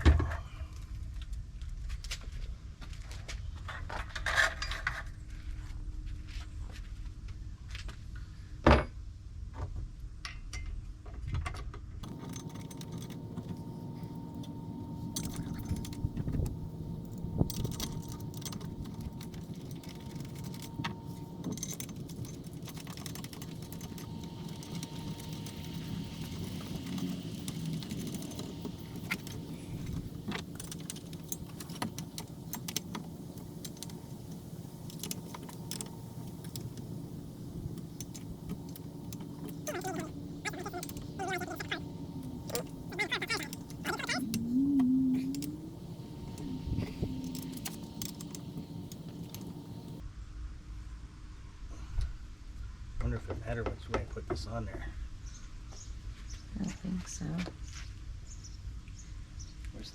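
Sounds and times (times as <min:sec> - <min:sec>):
metal hardware clinking: 0:12.0 - 0:44.5, 0:45.2 - 0:50.0.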